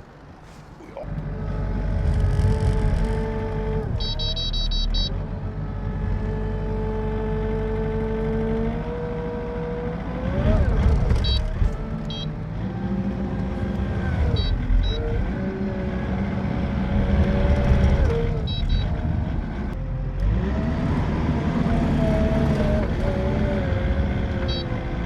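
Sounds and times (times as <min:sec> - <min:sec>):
diesel loader engine revving: 0:00.0 - 0:25.0
short high electronic beeps: 0:04.0 - 0:05.1.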